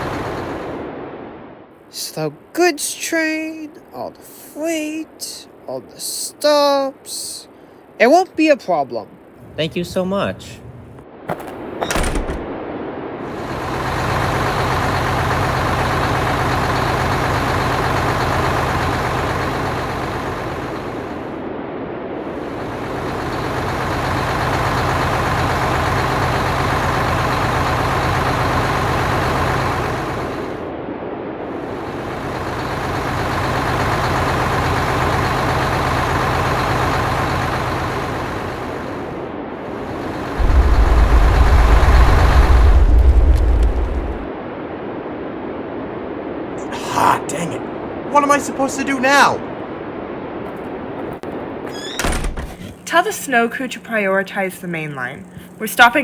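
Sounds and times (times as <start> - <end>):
locomotive engine running: 0.0 - 0.8, 9.4 - 11.4, 13.3 - 21.4, 22.3 - 30.7, 31.6 - 44.3
loud deep rumble: 9.3 - 11.2, 37.9 - 44.6.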